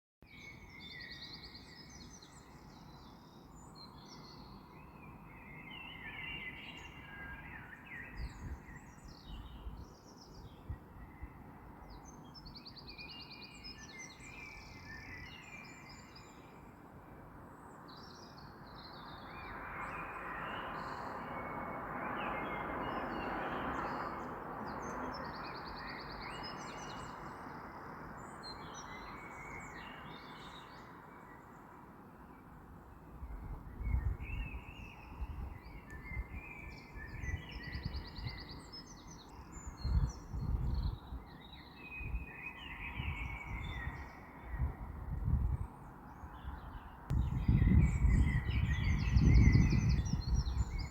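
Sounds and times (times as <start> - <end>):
birds chirping and trilling: 33.4 - 50.9.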